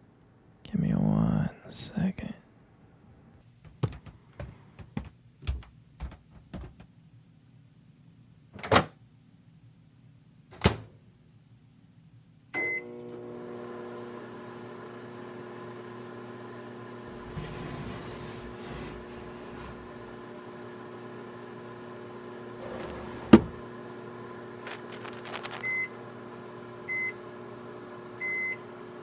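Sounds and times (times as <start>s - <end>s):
microwave oven humming: 12.5s - 29.0s
door thumps: 22.6s - 23.6s.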